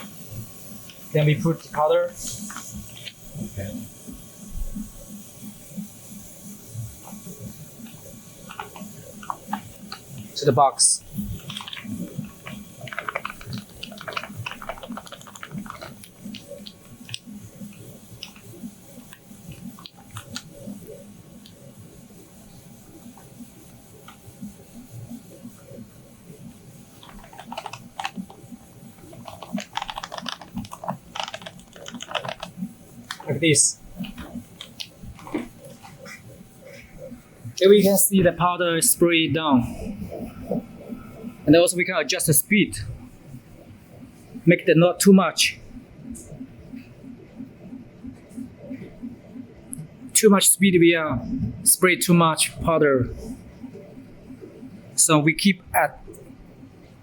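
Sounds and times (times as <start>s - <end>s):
powder pouring rustle: 11.2s - 18.5s, 29.0s - 36.0s.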